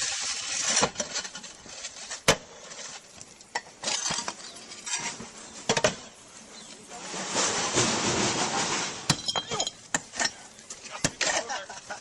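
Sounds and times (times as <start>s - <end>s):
scratchy rustle: 0.0s - 3.2s, 3.8s - 5.7s, 6.5s - 9.1s.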